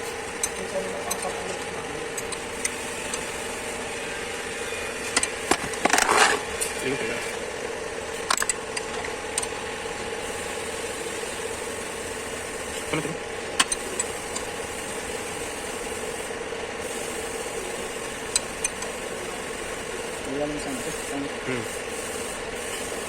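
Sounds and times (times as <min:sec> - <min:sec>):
steady mechanical hum: 0:00.0 - 0:23.0
metallic tool clicks: 0:00.4 - 0:01.4, 0:08.2 - 0:09.5.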